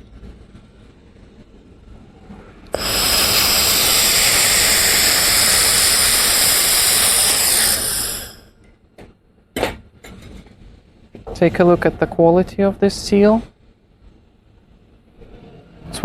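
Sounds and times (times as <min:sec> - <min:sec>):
laser welder hissing and whining: 0:02.7 - 0:08.5.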